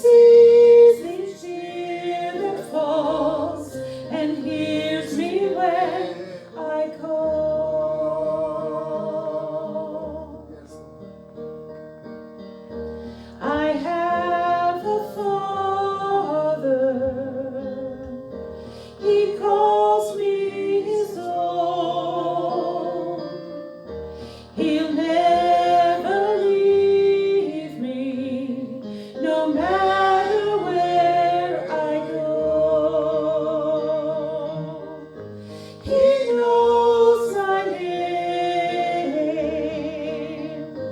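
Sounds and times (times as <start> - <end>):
woman singing with vibrato: 0.0 - 10.4, 13.4 - 17.8, 24.6 - 40.8
instrumental accompaniment: 0.0 - 40.9.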